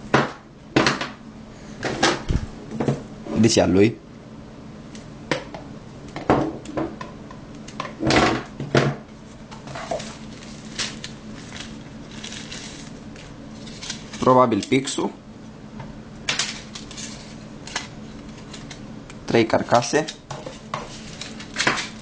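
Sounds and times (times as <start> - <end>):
plastic and cardboard crinkling: 9.2 - 14.3.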